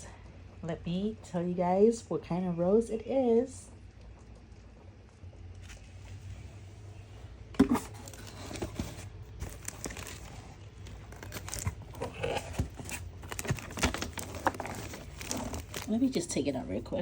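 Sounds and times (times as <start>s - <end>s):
paper packaging crinkling and tearing: 7.6s - 16.6s.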